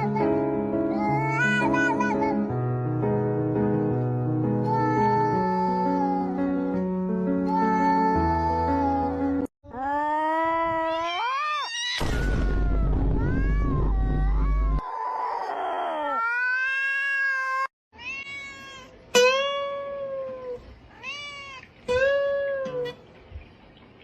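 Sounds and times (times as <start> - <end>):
cat meowing: 10.9 - 21.8.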